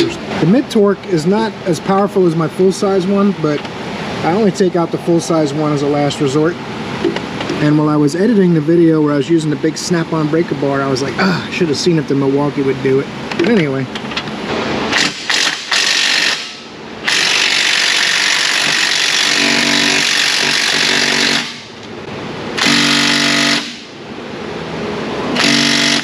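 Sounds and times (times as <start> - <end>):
impact wrench hammering: 14.9 - 21.8, 22.6 - 24.0, 25.4 - 26.0.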